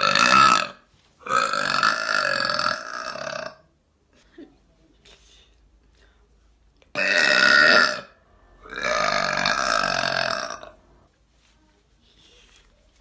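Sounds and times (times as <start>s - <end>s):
woman burping loudly: 0.0s - 3.6s, 6.9s - 10.8s.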